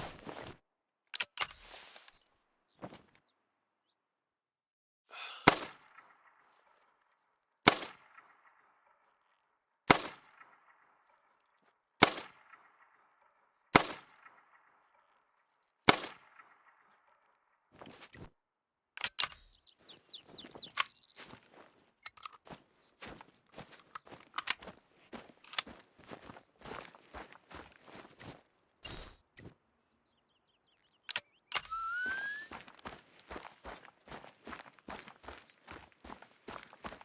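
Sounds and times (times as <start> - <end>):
rifle shots with echo: 5.4 - 5.9, 7.6 - 8.8, 9.9 - 11.0, 12.0 - 13.0, 13.7 - 14.7, 15.9 - 16.8
light clicks and rattles: 20.6 - 24.8.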